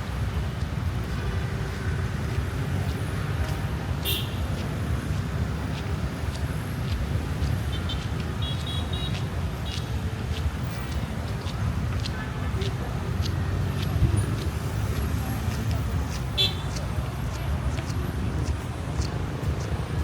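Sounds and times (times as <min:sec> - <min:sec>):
rumble of passing vehicles: 0:00.0 - 0:20.0
car horn beeps: 0:04.0 - 0:04.4.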